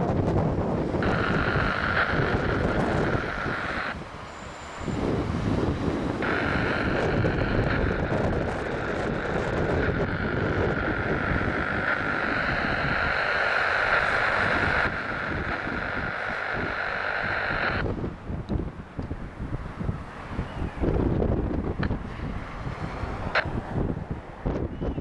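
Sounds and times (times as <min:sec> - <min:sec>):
wind buffeting microphone: 0:00.0 - 0:25.0
radio hiss: 0:00.7 - 0:17.9, 0:21.8 - 0:23.6.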